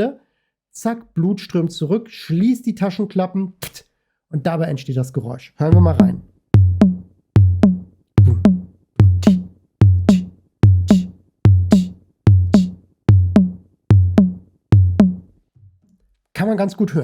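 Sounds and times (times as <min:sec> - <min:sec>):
kick-drum thump: 0:06.6 - 0:15.3.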